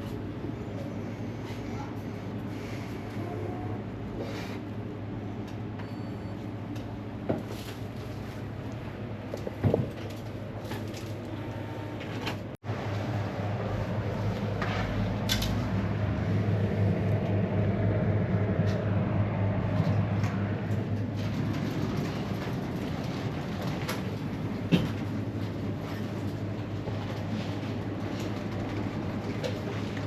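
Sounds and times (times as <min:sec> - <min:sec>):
low mechanical hum: 0:00.0 - 0:30.0
rumbling noise: 0:12.7 - 0:30.0.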